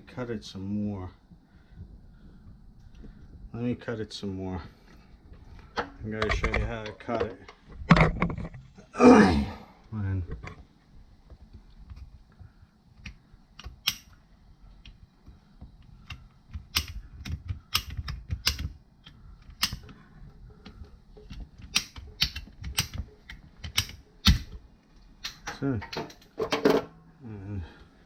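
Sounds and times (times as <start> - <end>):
pipe cutter clicking on pipe: 13.0 - 14.2.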